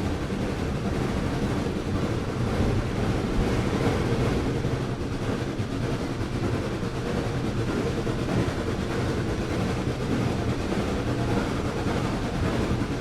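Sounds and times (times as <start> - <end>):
train wheels rumbling on rail: 0.0 - 13.0.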